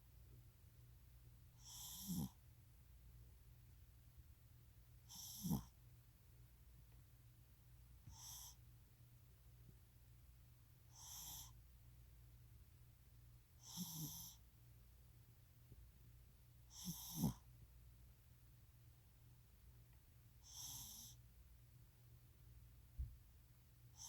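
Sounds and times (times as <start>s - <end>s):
faint snoring breaths: 1.6s - 2.4s, 5.1s - 5.8s, 8.1s - 8.6s, 10.9s - 11.6s, 13.6s - 14.4s, 16.7s - 17.5s, 20.4s - 21.2s.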